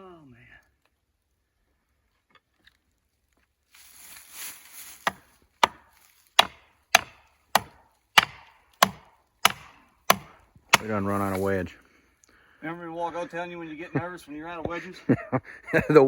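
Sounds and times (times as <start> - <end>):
scraping rustle: 3.7 - 6.4, 10.8 - 11.7
wedge being pounded: 5.0 - 5.8, 6.4 - 11.1.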